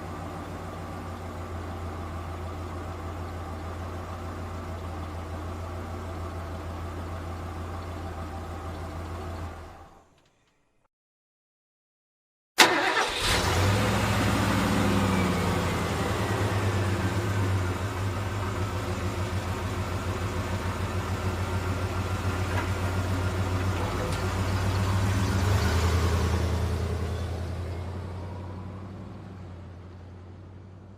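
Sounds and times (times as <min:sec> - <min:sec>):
engine starting and running: 0:12.6 - 0:30.6.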